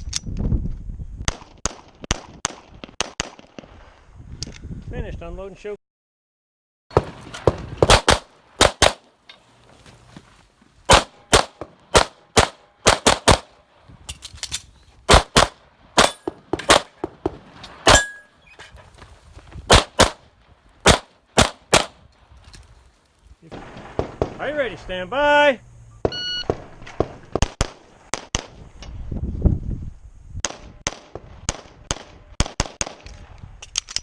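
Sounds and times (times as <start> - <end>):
pistol shots: 6.9 - 9.1, 10.9 - 13.6, 15.1 - 18.2, 19.7 - 20.2, 20.8 - 22.0.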